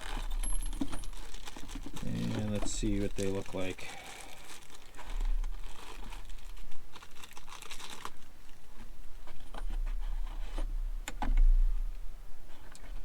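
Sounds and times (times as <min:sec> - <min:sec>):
packaging crinkling and tearing: 0:00.0 - 0:09.6.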